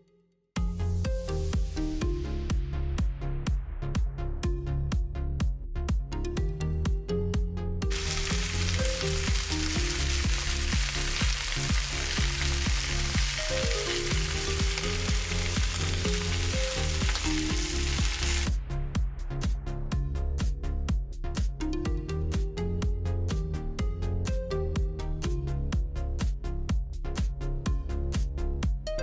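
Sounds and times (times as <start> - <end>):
background music with steady beat: 0.6 - 29.0
food sizzling in hot fat: 7.9 - 18.6.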